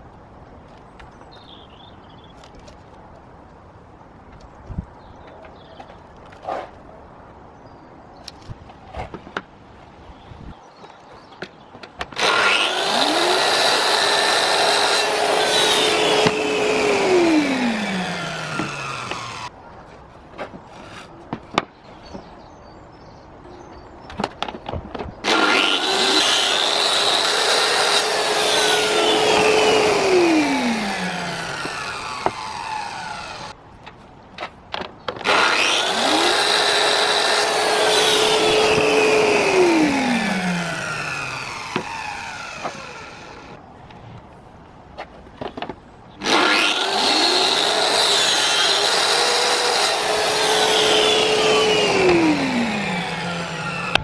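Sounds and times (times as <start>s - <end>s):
electric power saw cutting wood: 12.2s - 19.5s, 25.2s - 33.6s, 35.2s - 43.6s, 46.2s - 54.0s.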